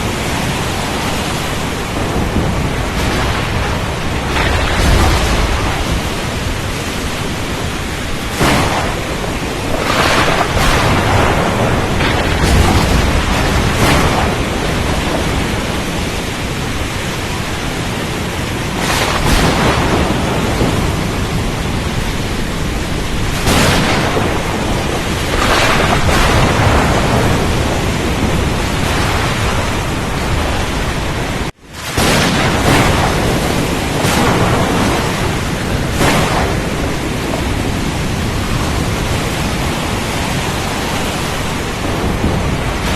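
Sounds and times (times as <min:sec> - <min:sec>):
wind and water rushing: 0:00.0 - 0:42.9.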